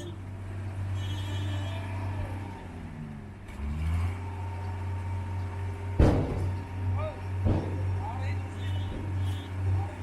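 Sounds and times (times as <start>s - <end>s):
heavy machinery engine humming: 0.0s - 10.0s
loud metal clank: 6.0s - 6.6s.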